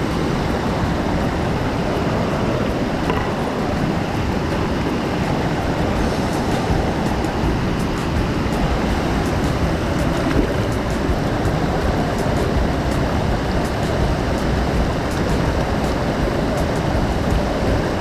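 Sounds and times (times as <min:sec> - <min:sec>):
rushing waterfall and stream: 0:00.0 - 0:18.0.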